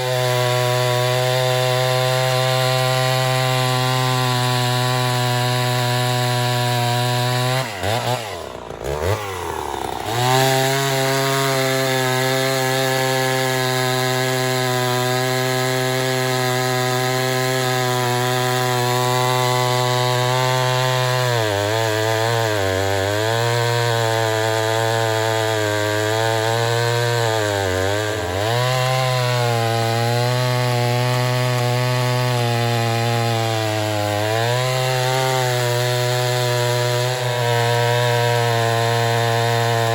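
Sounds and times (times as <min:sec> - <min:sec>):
chainsaw cutting at full throttle: 0:00.0 - 0:39.9.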